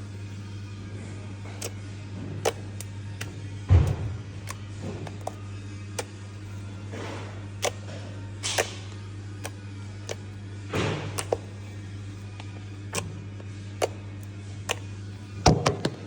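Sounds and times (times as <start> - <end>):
steady low hum: 0.0 - 16.0
slime squelching: 2.4 - 16.0.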